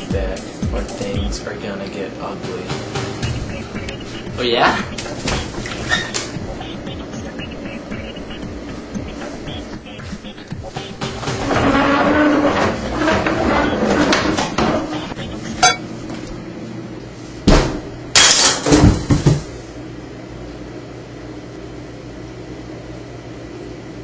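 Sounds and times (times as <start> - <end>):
steady low hum: 0.0 - 18.2.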